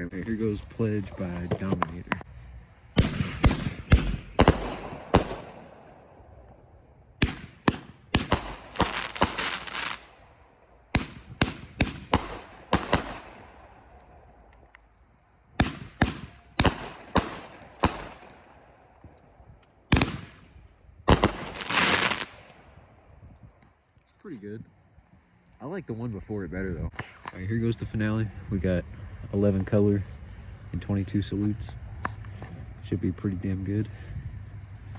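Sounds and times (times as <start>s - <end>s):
firework cake firing volleys: 2.9s - 6.5s, 7.2s - 10.2s, 10.9s - 13.9s, 15.6s - 18.8s, 19.9s - 22.6s.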